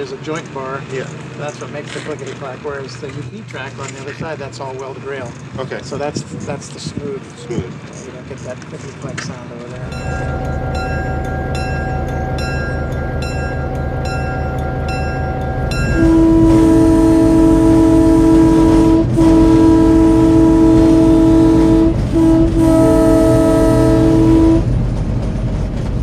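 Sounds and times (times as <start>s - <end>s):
train wheels clacking on rails: 9.7s - 26.0s
train horn blasts: 9.8s - 24.7s.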